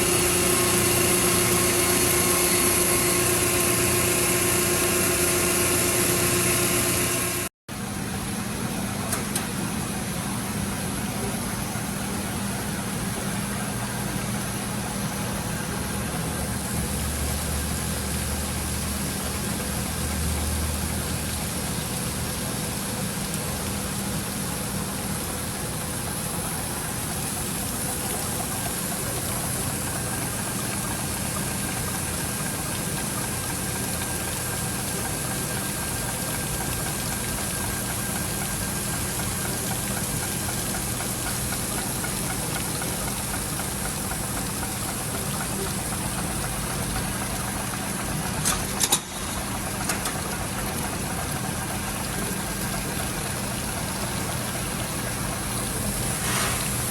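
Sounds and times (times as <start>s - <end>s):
grinding machine humming: 0.0s - 7.5s.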